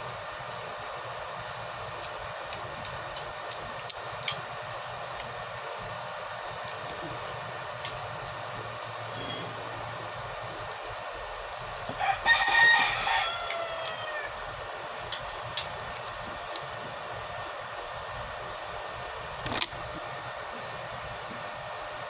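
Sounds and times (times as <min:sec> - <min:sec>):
rooster crowing: 0:11.9 - 0:14.6.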